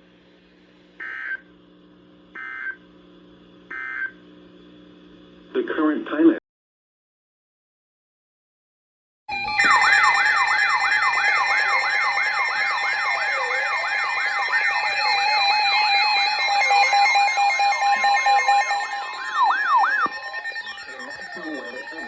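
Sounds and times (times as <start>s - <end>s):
electronic siren yelping: 9.3s - 22.0s
siren wail: 9.3s - 22.0s
steady alert tones: 9.3s - 22.0s.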